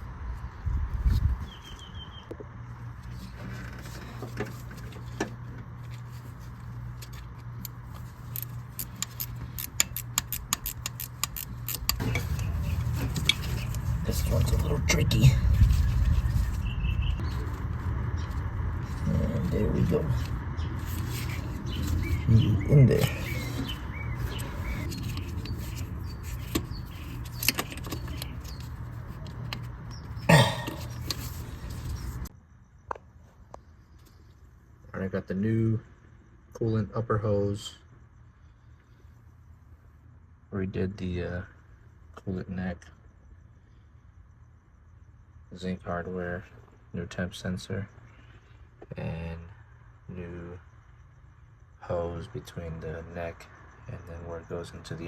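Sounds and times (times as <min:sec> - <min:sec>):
steady low hum: 0:00.0 - 0:55.0
metallic clicks of hand tools: 0:07.6 - 0:12.2.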